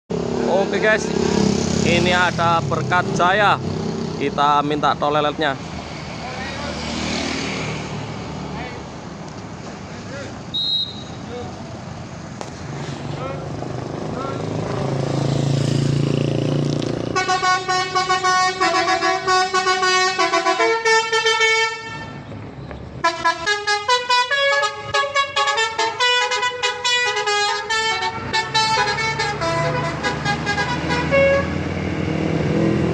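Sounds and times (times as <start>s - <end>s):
bus engine running: 11.3s - 22.4s, 23.0s - 32.9s
multi-tone musical bus horn: 17.1s - 22.2s, 23.0s - 31.6s.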